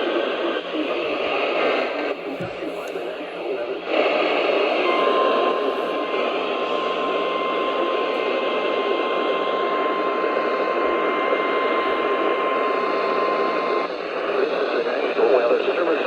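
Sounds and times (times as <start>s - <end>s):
radio static hiss: 0.0s - 16.0s
high-pitched warning alarm tone: 4.7s - 13.9s.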